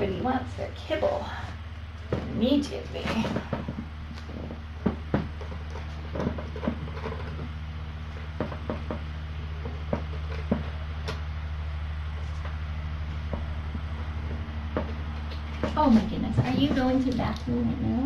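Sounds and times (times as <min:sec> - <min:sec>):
low electrical hum: 0:00.0 - 0:18.0
cats eating kibble from bowls: 0:03.1 - 0:10.6.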